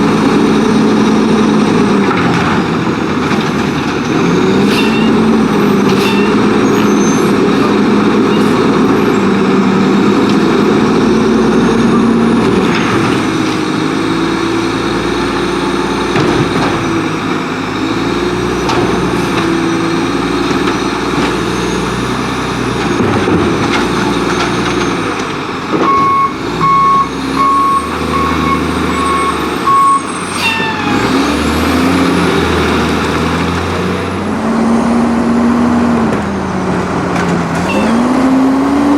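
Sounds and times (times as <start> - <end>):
diesel truck engine revving: 0.0 - 38.9
reversing beeps: 25.8 - 30.8, 37.6 - 38.4.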